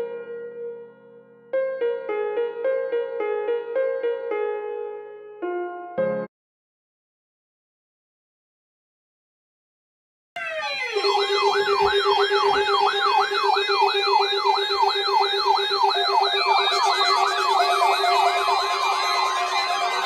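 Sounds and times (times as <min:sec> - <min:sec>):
rising and falling alarm yelp: 0:10.4 - 0:20.0
steady low alarm tone: 0:10.4 - 0:20.0.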